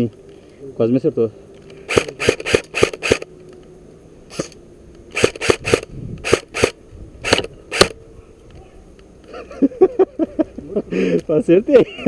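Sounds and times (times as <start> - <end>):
airsoft rifle shots: 1.9 - 3.3, 4.3 - 8.0.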